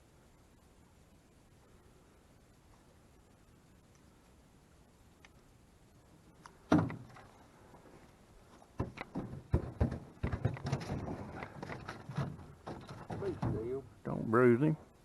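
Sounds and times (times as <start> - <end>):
clatter in a boat: 8.8 - 13.8
knocks and thumps in a boat: 8.8 - 13.9.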